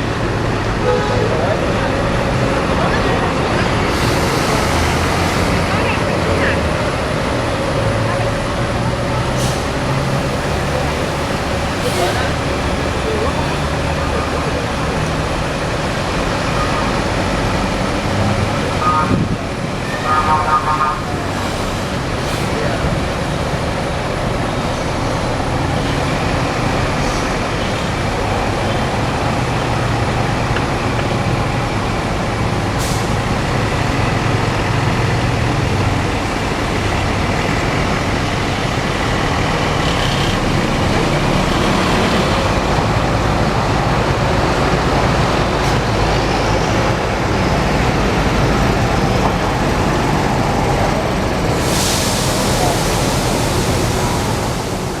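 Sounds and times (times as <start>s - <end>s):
diesel bus engines running: 0.0s - 55.0s
traffic noise: 0.0s - 55.0s
air-brake hiss: 51.3s - 55.0s.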